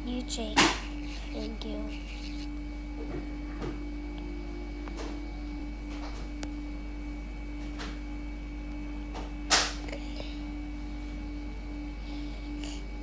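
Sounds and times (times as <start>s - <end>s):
electrical hum: 0.0s - 13.0s.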